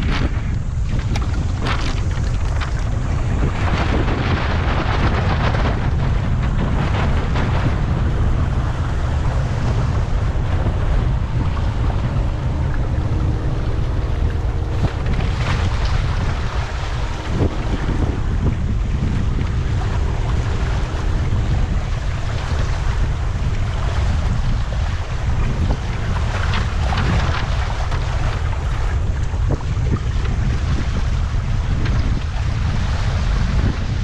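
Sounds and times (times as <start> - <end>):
water splashing along hulls: 0.0 - 34.0
wind buffeting microphone: 0.0 - 34.0.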